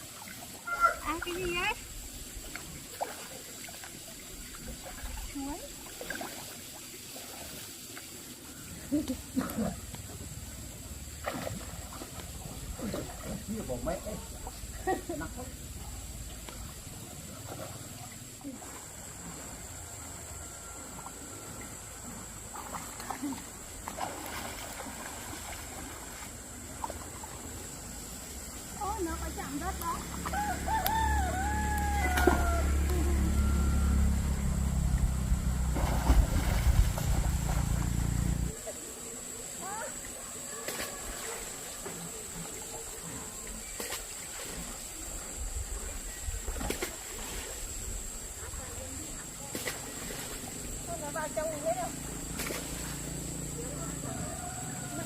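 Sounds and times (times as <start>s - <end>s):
pond water trickling: 0.0s - 55.0s
small water splashes: 0.0s - 55.0s
high-pitched insect buzz: 27.6s - 40.0s
low rumble: 32.1s - 38.5s.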